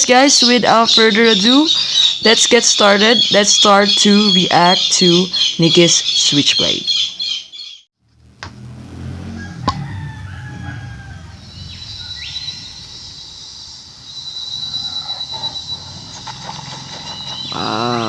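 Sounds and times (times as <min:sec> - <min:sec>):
rooster crowing: 0:09.2 - 0:12.6.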